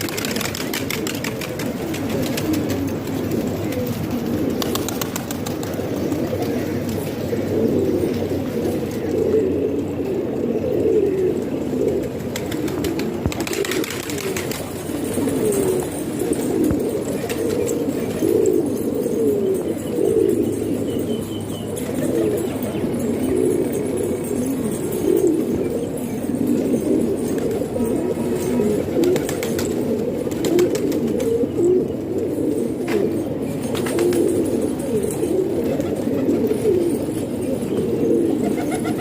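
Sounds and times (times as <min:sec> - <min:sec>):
pigeons cooing: 0:00.0 - 0:39.0.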